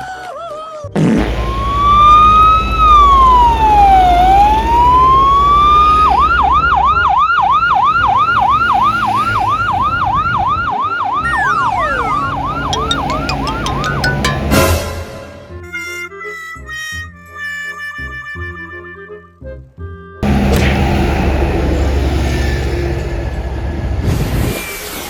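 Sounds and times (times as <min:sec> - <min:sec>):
emergency vehicle siren: 0:01.2 - 0:14.8, 0:20.2 - 0:24.5
falling tone: 0:01.2 - 0:15.6.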